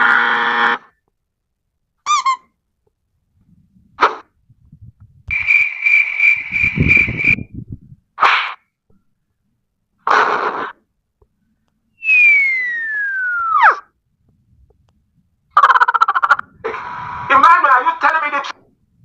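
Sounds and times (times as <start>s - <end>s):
short noisy bursts: 0.0s - 0.9s, 5.3s - 7.4s, 10.0s - 10.8s, 16.6s - 18.0s
long falling whistle: 5.3s - 7.5s, 12.0s - 13.8s
pulsing cartoon whistle: 5.3s - 7.5s, 12.0s - 13.8s.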